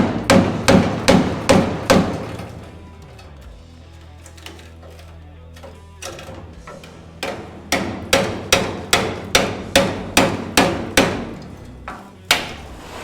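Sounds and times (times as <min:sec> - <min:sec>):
hammer striking steel panel: 0:00.0 - 0:03.2, 0:06.0 - 0:12.8.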